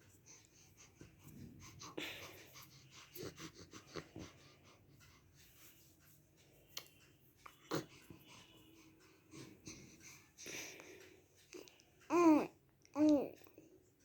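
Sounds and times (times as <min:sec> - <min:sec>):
soft breathy rush: 0:00.0 - 0:06.8, 0:07.6 - 0:12.1
baby breathing: 0:00.2 - 0:05.2, 0:07.5 - 0:12.4.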